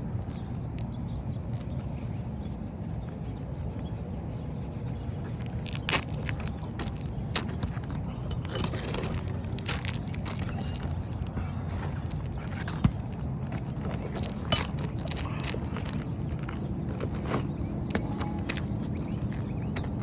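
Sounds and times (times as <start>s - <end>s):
steady low rumble: 0.0s - 20.0s
hand tools clinking and scraping: 5.6s - 20.0s.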